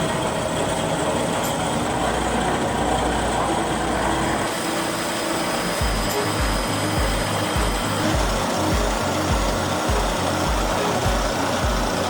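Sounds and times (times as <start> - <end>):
polishing machine grinding stone: 0.0 - 12.0
low pulsing: 1.9 - 12.0.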